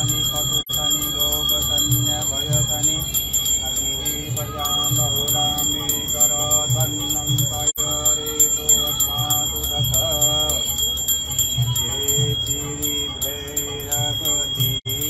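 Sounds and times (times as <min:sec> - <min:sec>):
bells ringing: 0:00.0 - 0:15.0.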